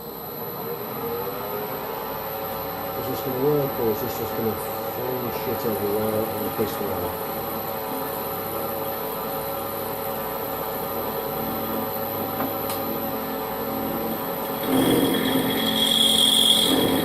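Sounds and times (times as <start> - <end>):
lathe running: 11.2 - 17.0
high-pitched cutting squeal: 14.4 - 17.0
rough cutting noise: 14.6 - 17.0.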